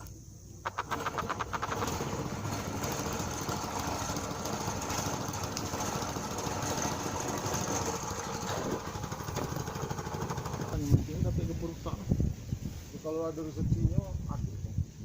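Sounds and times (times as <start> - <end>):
rapid ticks: 0.0 - 2.0
small engine running: 0.7 - 11.3.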